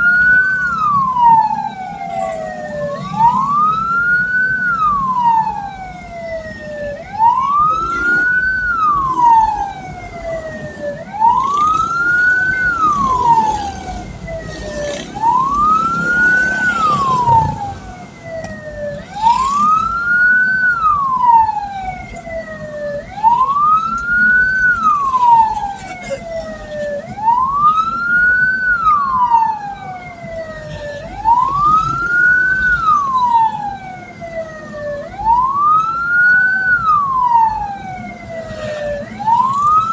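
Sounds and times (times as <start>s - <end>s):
low vehicle rumble: 0.0s - 39.9s
siren wailing: 0.0s - 39.9s.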